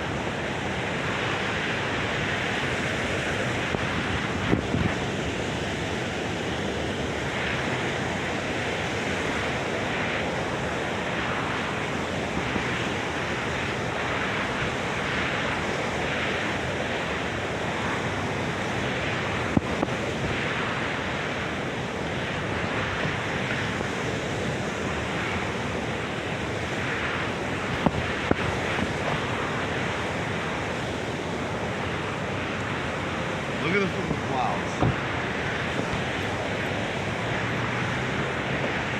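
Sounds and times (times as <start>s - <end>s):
wind buffeting microphone: 0.0s - 38.9s
surf breaking: 24.9s - 38.9s.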